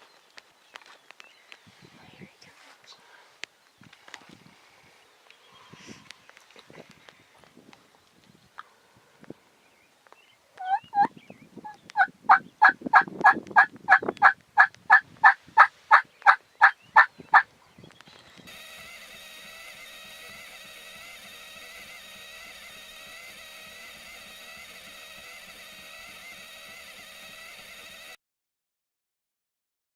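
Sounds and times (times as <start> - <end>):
wild turkey yelping: 10.6 - 17.4.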